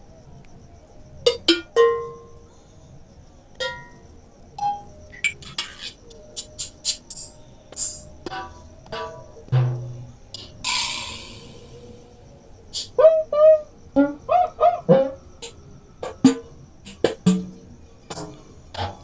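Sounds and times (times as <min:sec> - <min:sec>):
electronic percussion hits: 0:09.0 - 0:12.0, 0:16.0 - 0:17.6.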